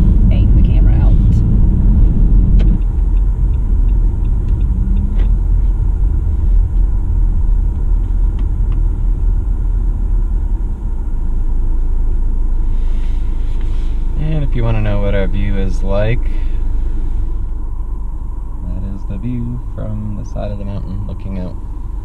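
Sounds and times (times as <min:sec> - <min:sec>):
wind buffeting microphone: 0:00.0 - 0:09.6
low rumble inside car: 0:00.0 - 0:22.0.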